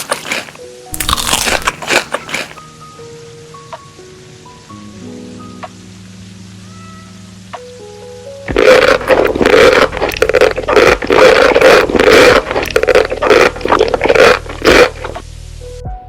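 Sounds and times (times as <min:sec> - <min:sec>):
chewing crunchy food: 0:00.0 - 0:02.6, 0:08.5 - 0:15.2.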